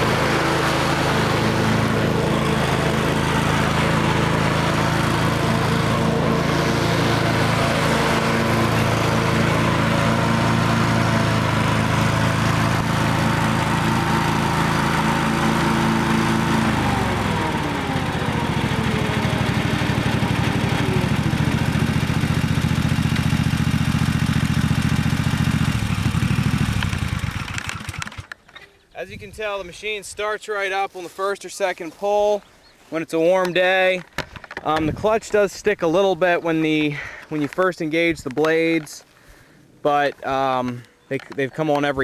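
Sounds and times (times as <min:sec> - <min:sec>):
lawn mower engine running: 0:00.0 - 0:28.5, 0:33.4 - 0:42.0.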